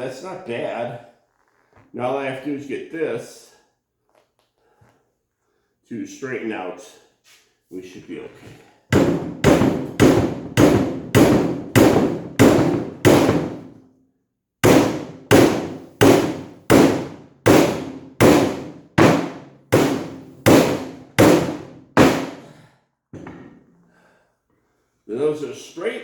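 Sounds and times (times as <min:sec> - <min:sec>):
hammer striking metal frame: 0:08.9 - 0:13.8, 0:14.6 - 0:22.4.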